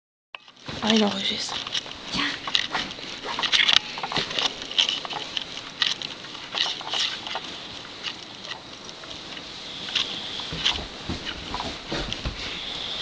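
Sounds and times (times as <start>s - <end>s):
person hissing breathily: 12.4s - 13.0s.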